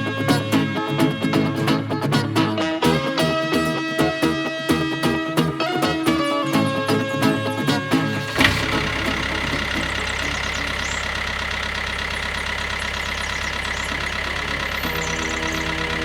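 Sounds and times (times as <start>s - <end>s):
engine idling: 5.4s - 16.0s.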